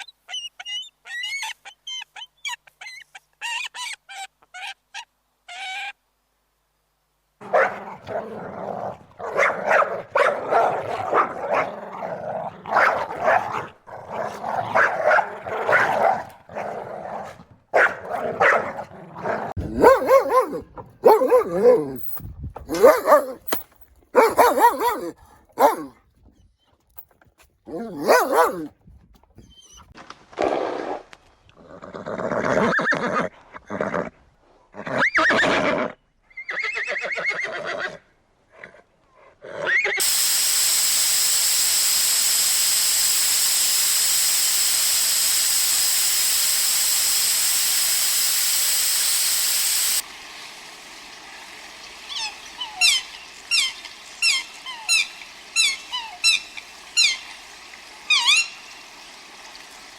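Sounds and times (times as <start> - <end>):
horse whinnying: 31.8 - 34.1, 34.8 - 38.0
steady hiss: 40.0 - 52.3.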